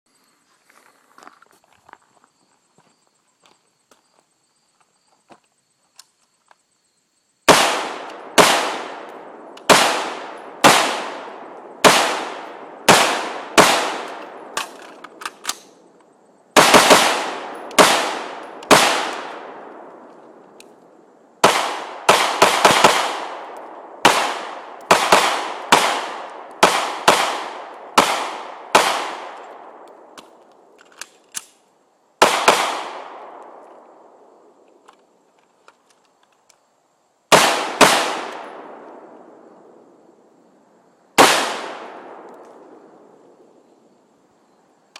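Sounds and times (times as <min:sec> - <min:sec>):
gunshots with long echo: 0:07.5 - 0:15.8, 0:16.5 - 0:20.5, 0:21.4 - 0:30.8, 0:32.2 - 0:34.6, 0:37.3 - 0:39.9, 0:41.2 - 0:43.4.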